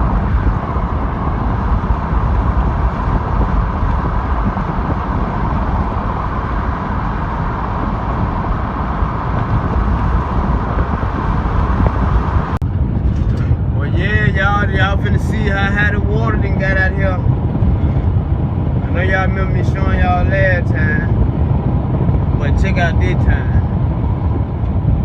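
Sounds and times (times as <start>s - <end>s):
road and engine noise inside car: 0.0s - 25.0s.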